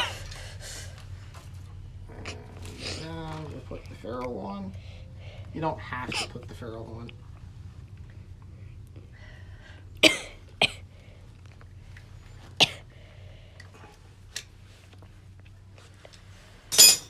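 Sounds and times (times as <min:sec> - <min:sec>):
steady low hum: 0:00.0 - 0:17.0
clicks of small metal tools: 0:16.7 - 0:17.0.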